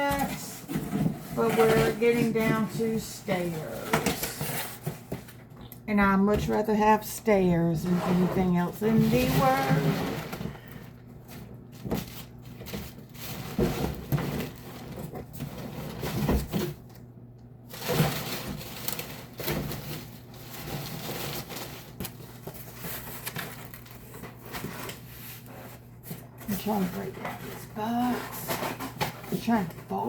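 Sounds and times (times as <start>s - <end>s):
cardboard crunching and creasing: 17.7s - 30.0s.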